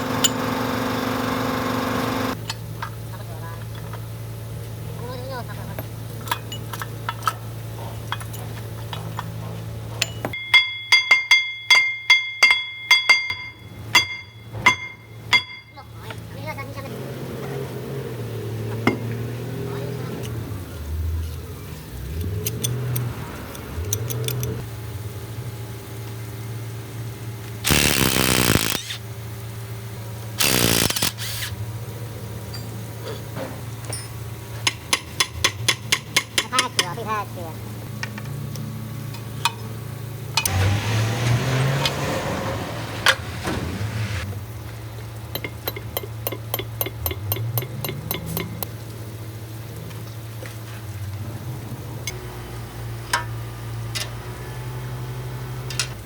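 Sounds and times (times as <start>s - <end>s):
diesel engine running: 0.0s - 2.5s, 26.6s - 34.8s, 37.1s - 45.4s
loud hissing bursts: 27.6s - 29.0s.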